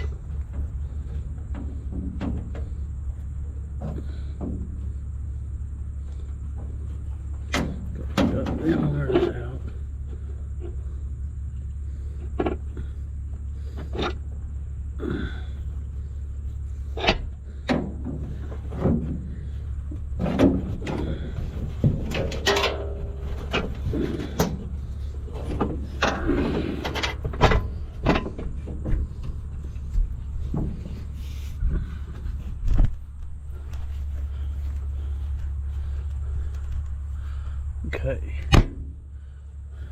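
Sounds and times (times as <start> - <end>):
steady low hum: 0.0 - 39.9
tools clicking and rattling: 22.0 - 24.6.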